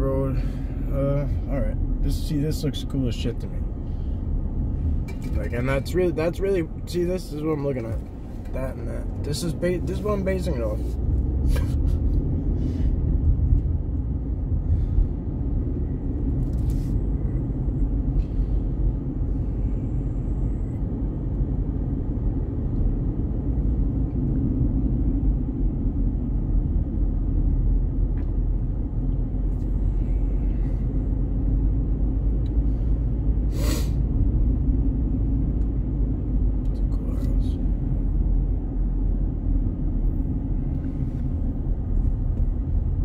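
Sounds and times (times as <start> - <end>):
car road and engine rumble: 0.0 - 43.0.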